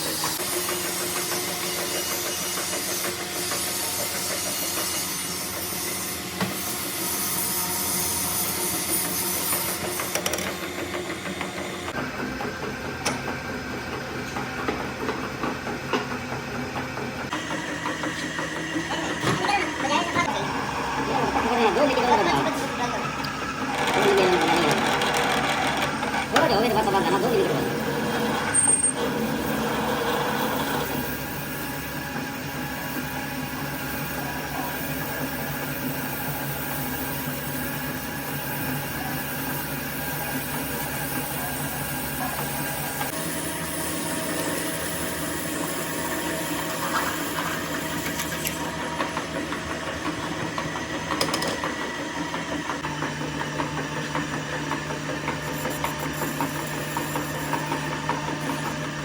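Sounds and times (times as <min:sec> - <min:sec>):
machine humming: 0:17.3 - 0:31.1.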